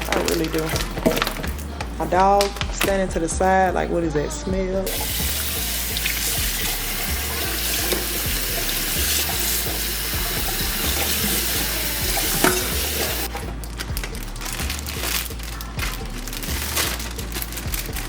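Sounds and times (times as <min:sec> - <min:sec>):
background music beat: 0:00.0 - 0:18.0
faucet running into sink: 0:04.9 - 0:13.3.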